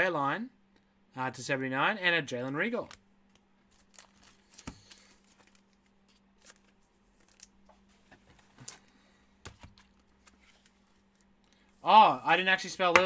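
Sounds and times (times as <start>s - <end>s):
trading cards rustling and clicking: 2.8s - 11.3s.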